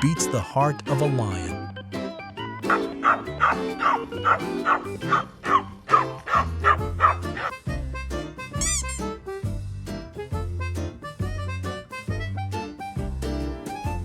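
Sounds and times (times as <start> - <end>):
background music: 0.0 - 14.0
small dog yapping: 2.7 - 7.5.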